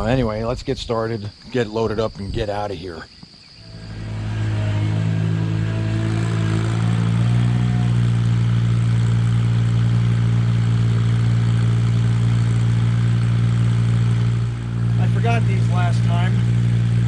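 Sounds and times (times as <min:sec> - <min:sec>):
engine idling: 0:03.6 - 0:17.0.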